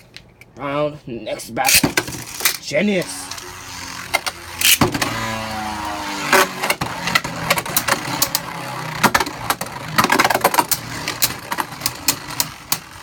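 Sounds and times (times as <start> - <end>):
spinning tops whirring: 1.8 - 13.0
spinning tops clacking together: 6.5 - 13.0.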